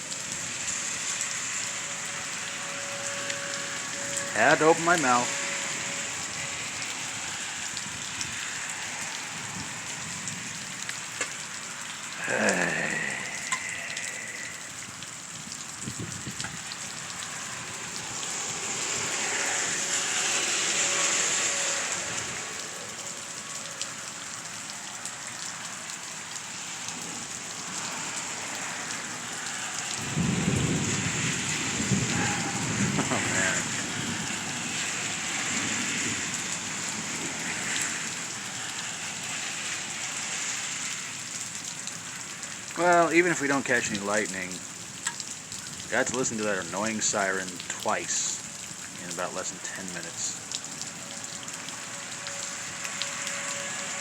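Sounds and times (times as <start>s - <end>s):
rain falling: 0.0s - 54.0s
low rumble of thunder: 15.8s - 20.4s, 30.0s - 37.4s.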